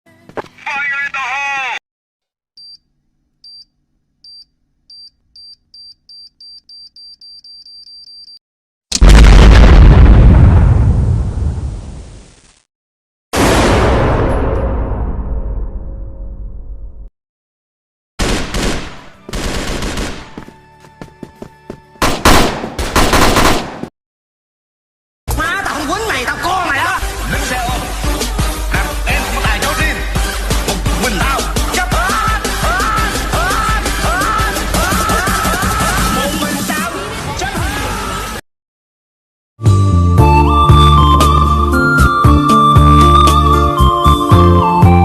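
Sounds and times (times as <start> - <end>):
machine-gun fire: 18.2 - 20.4, 22.0 - 23.9.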